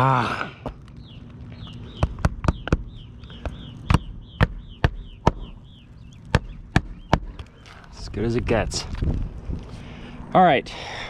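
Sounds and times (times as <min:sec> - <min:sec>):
high falling chirp: 0:00.8 - 0:08.1
sharp irregular taps: 0:01.7 - 0:05.6, 0:06.2 - 0:07.5.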